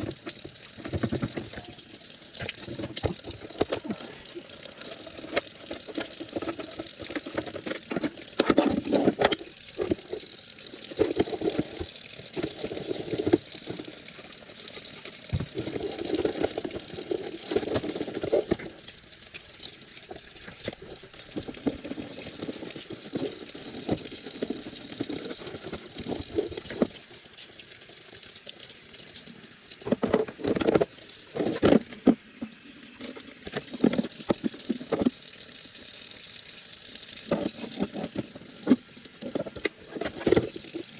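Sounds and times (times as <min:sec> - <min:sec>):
tap water splashing in sink: 0:00.0 - 0:10.3, 0:14.8 - 0:19.5.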